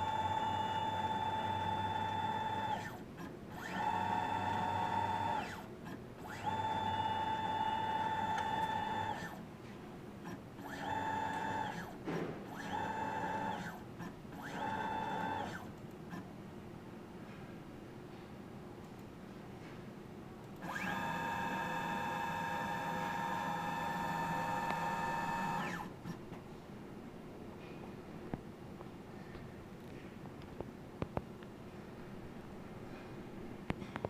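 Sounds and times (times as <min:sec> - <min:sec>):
motor whining: 0:20.6 - 0:26.2.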